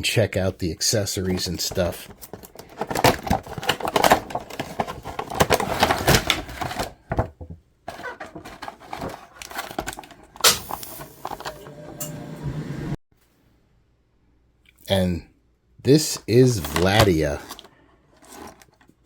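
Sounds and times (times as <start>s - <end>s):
plastic packaging clicks and rustles: 1.1s - 11.5s, 16.6s - 19.0s.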